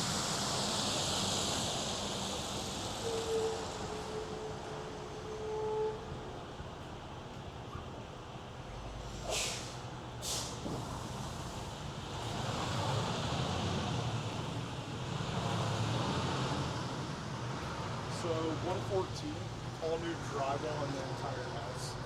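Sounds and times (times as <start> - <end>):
road noise: 0.0 - 22.0
vehicle rumble: 6.0 - 22.0
short hissing swishes: 9.1 - 10.6.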